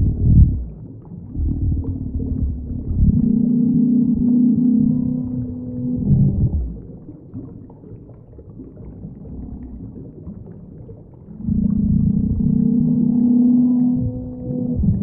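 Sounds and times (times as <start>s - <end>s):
low rumble: 0.0s - 7.4s, 8.7s - 15.0s
deep monster roar: 11.4s - 15.0s.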